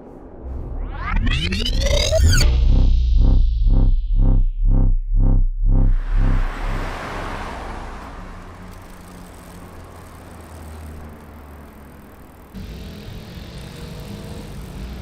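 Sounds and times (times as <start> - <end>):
held low synth notes: 0.0 - 9.8
rushing noise swell: 0.0 - 10.0
pulsing synthesizer notes: 0.0 - 10.2.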